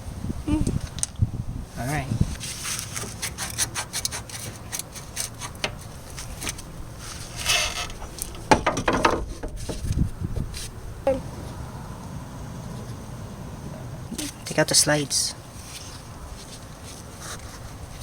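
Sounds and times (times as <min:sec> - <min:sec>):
rubbing and scraping metal parts: 0:02.4 - 0:10.7.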